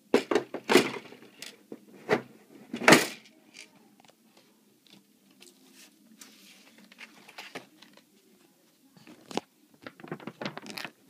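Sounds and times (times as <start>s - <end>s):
clicks and taps handling rifle: 4.8s - 5.6s
packaging rustling: 9.2s - 11.0s.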